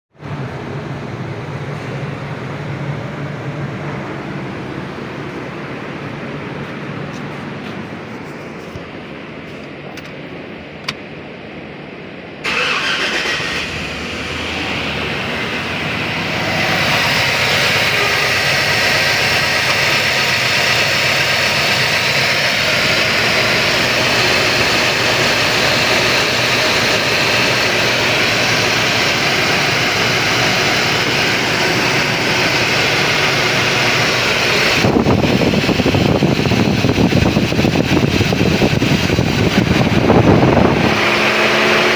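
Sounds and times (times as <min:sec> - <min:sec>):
misfiring car engine: 0:12.4 - 0:41.9.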